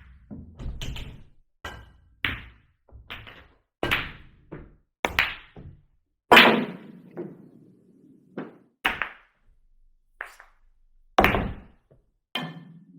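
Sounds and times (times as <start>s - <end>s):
low rumble of rolling balls: 0.0s - 6.0s
billiard ball hard strike: 1.7s - 7.5s, 11.2s - 11.8s.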